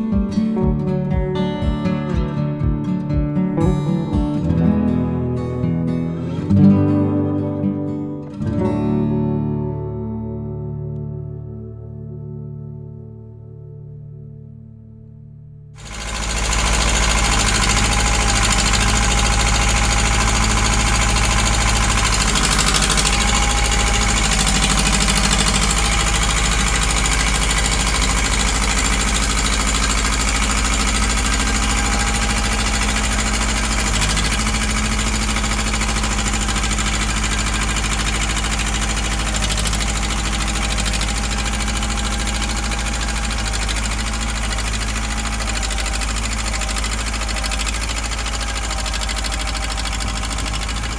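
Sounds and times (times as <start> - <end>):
tractor engine running: 15.8 - 50.9.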